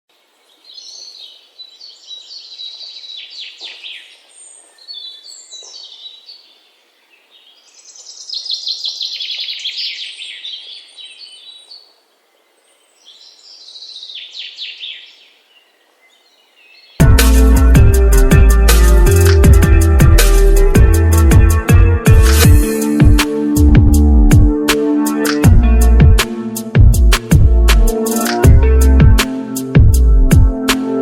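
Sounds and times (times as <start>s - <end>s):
songbird singing: 0.1s - 18.2s.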